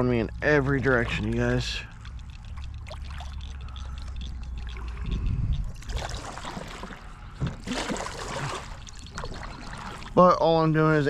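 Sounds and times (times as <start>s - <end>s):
wind rumbling on microphone: 4.6s - 6.8s
water splashing around a kayak: 5.8s - 10.6s.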